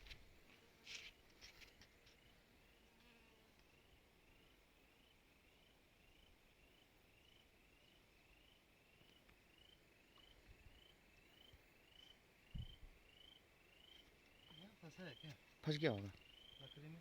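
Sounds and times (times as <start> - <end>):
low thump: 12.5 - 12.9.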